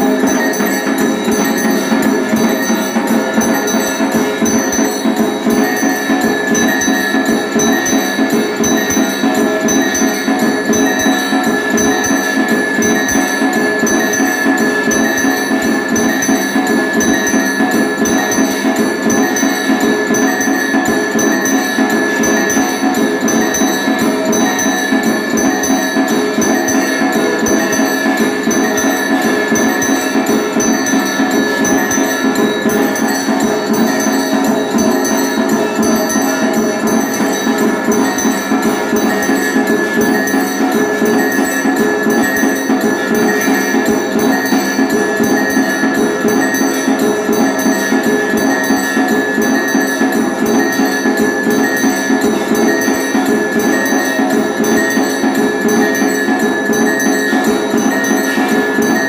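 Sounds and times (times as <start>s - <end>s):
bells ringing: 0.0s - 59.0s
drum beaten rapidly: 0.0s - 59.0s.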